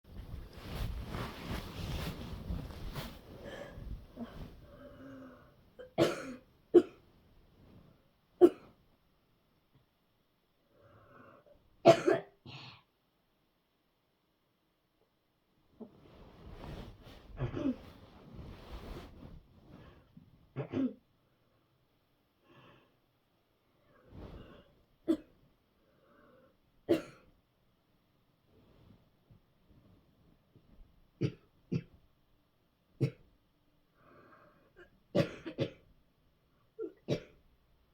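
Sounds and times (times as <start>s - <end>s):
person coughing: 5.8s - 7.0s, 11.9s - 12.8s, 17.4s - 17.8s, 20.6s - 21.0s, 35.2s - 35.8s.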